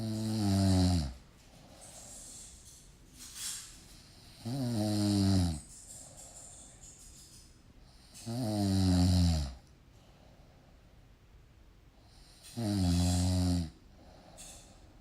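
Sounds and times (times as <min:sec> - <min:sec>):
long low snores: 0:00.0 - 0:01.2, 0:04.2 - 0:05.7, 0:07.9 - 0:09.7, 0:12.0 - 0:14.6
soft breathing: 0:01.1 - 0:02.9, 0:13.8 - 0:15.0.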